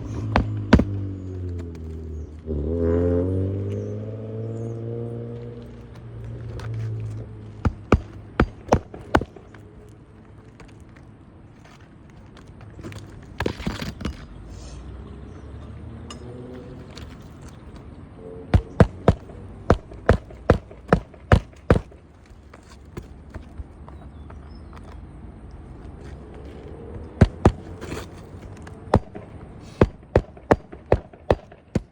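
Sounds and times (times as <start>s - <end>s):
hammer striking roofing nails: 0.0s - 1.0s, 7.6s - 9.5s, 18.6s - 22.0s, 27.2s - 28.1s, 28.9s - 31.9s.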